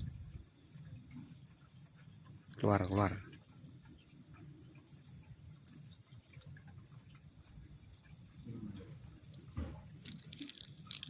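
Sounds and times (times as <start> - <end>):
crickets chirping: 6.8 - 11.0.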